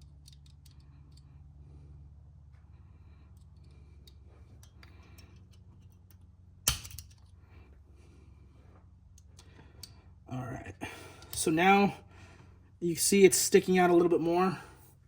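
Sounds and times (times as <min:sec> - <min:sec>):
faint metal clicks: 0:00.0 - 0:01.5
center punch metallic snap: 0:06.7 - 0:07.0.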